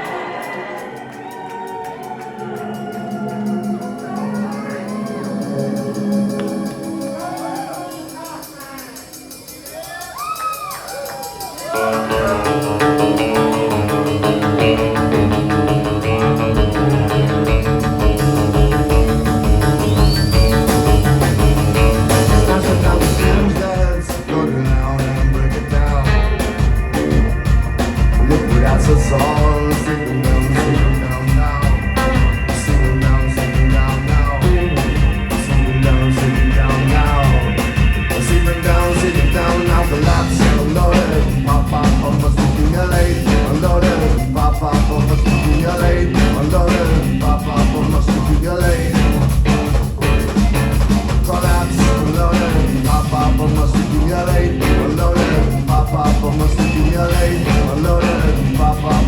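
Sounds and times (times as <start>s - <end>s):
sustained high held tones: 0.0s - 49.2s, 50.0s - 59.0s
drums: 5.8s - 59.0s
rock band playing loudly: 11.2s - 59.0s
bass guitar: 11.7s - 59.0s.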